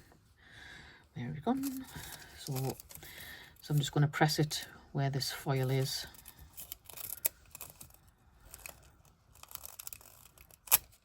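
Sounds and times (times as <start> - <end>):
foil crinkling: 1.5 - 4.0, 5.7 - 11.0.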